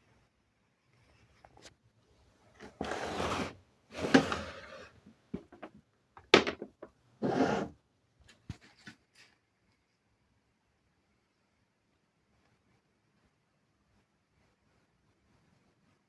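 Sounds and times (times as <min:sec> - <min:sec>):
scraping or rustling handling: 0:02.6 - 0:05.7.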